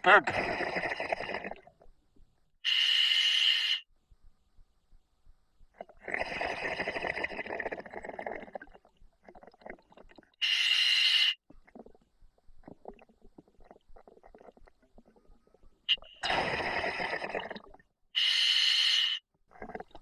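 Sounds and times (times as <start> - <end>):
exhaled bubbles gurgling: 0.2 - 1.9, 5.7 - 10.4, 11.5 - 17.9, 19.5 - 20.0
regulator hiss on inhale: 2.7 - 3.9, 10.4 - 11.4, 18.2 - 19.2.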